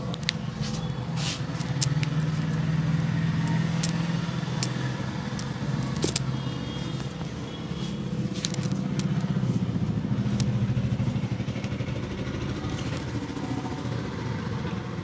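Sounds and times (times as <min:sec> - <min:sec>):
sharp clicks: 0:00.0 - 0:00.8, 0:03.3 - 0:07.5
vehicle engine humming: 0:00.0 - 0:15.0.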